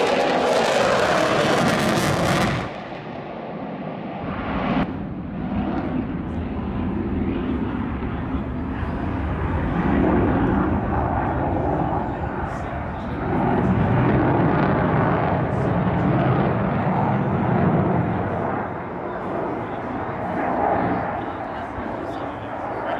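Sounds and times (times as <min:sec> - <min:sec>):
loud engine rush: 0:00.0 - 0:03.3
aircraft low rumble in flight: 0:00.0 - 0:22.9.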